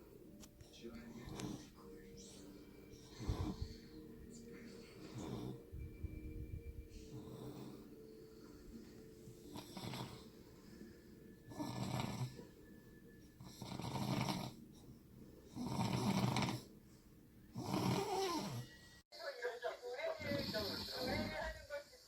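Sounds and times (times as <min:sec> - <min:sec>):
quiet breathing: 0:00.0 - 0:19.0
man snoring: 0:03.0 - 0:03.8, 0:05.0 - 0:05.8, 0:09.5 - 0:10.4, 0:11.5 - 0:12.5, 0:13.4 - 0:14.6, 0:15.5 - 0:16.7, 0:17.6 - 0:18.7.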